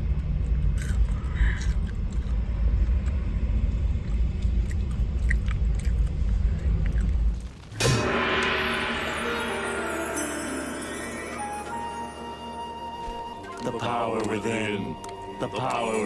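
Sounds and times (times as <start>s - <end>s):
chewing and biting: 0.0s - 7.7s
steady low rumble: 0.0s - 11.2s
faint mouth clicks: 0.5s - 3.2s, 4.0s - 7.4s.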